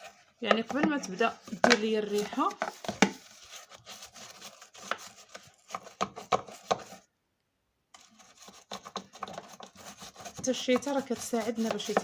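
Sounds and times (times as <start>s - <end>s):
scrub brush scratching metal drum: 8.0s - 12.0s.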